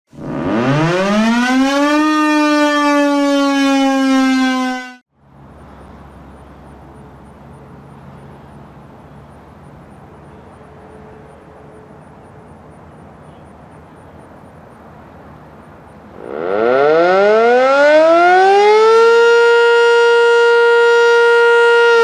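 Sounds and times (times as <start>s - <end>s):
warning siren winding up: 0.2s - 5.0s, 16.2s - 22.0s.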